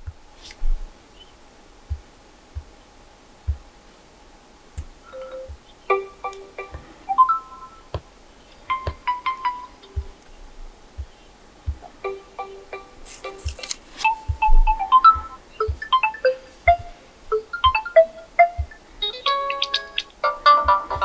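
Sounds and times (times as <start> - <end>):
sparse low beats: 1.8 - 2.8, 3.4 - 3.7, 10.0 - 12.0
chiming ringtone melody: 5.1 - 7.9, 14.2 - 21.0.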